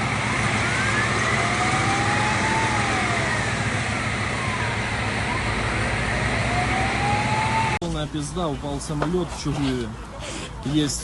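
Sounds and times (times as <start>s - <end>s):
emergency sirens wailing: 0.0s - 7.8s.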